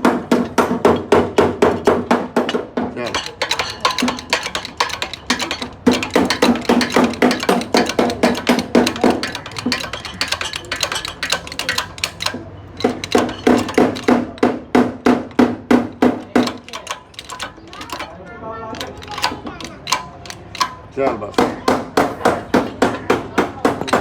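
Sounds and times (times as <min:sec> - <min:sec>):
rapid ringing hammer blows: 0:00.1 - 0:18.1.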